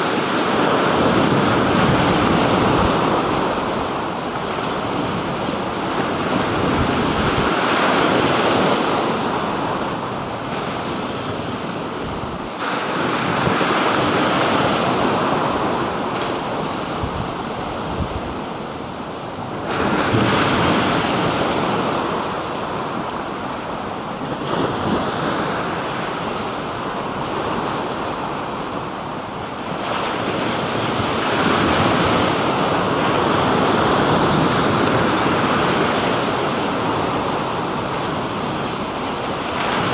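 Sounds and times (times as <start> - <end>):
wind on microphone: 0.0 - 23.2
waves washing onto shore: 0.0 - 39.9.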